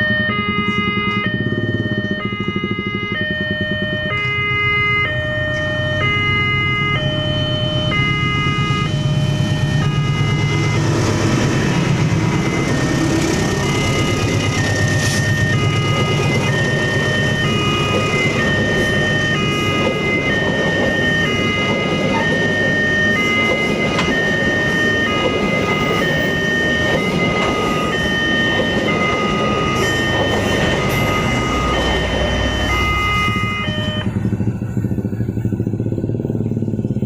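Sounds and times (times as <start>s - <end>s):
two-tone level crossing alarm: 0.0s - 34.9s
train wagons rumbling and clattering: 5.1s - 37.0s.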